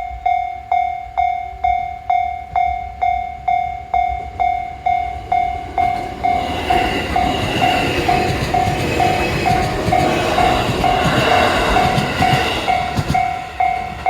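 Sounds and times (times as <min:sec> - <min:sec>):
level crossing warning bell: 0:00.0 - 0:14.0
electric train running: 0:05.0 - 0:14.0.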